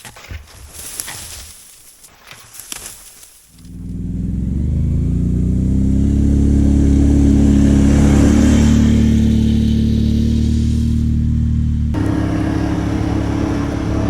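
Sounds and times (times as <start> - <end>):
atv engine running: 3.6 - 14.0.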